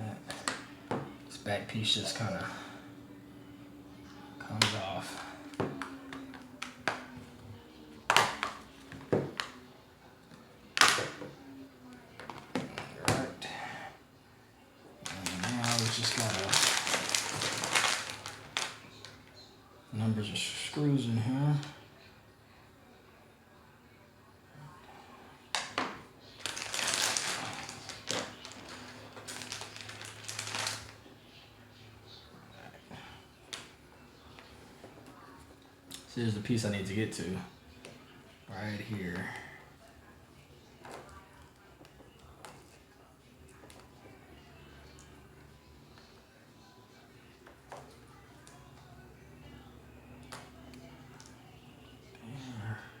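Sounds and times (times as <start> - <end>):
scraping and rustling of plastic parts: 15.0 - 19.2, 25.6 - 31.0.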